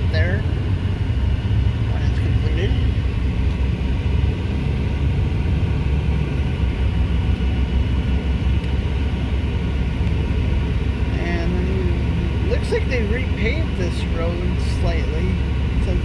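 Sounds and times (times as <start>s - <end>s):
car tyre and engine rumble: 0.0s - 16.0s.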